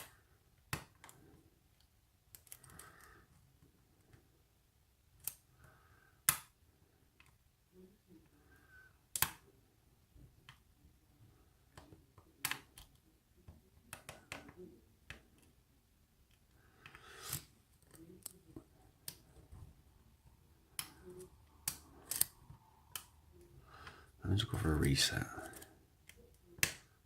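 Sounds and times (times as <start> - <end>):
lock pick scrape: 21.7 - 22.4.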